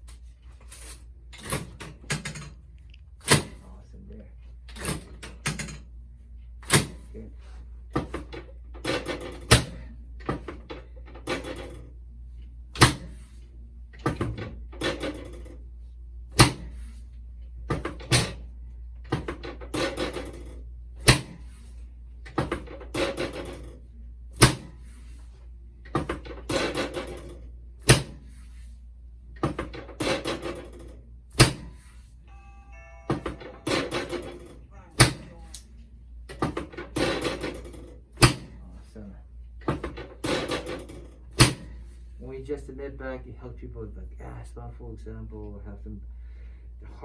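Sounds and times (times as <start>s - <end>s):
rustling on a table: 28.2s - 28.8s.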